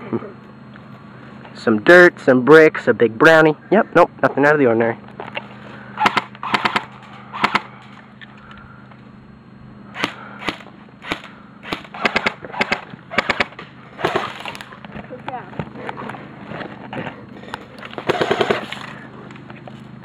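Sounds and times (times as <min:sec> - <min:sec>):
airsoft guns firing: 0:06.0 - 0:07.7, 0:10.0 - 0:14.6, 0:18.0 - 0:18.8.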